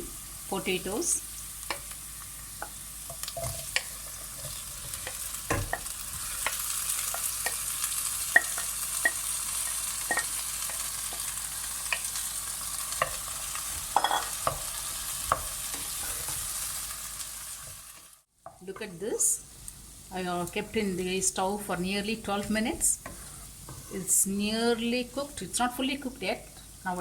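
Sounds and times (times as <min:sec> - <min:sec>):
potatoes sizzling in hot oil: 0:00.0 - 0:27.0
spoon scraping a pan: 0:02.6 - 0:11.3, 0:12.9 - 0:16.6, 0:21.7 - 0:24.2.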